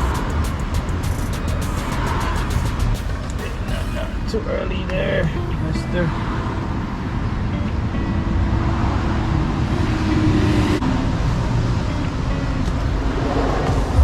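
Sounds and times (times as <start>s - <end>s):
low rumble: 0.0s - 8.0s.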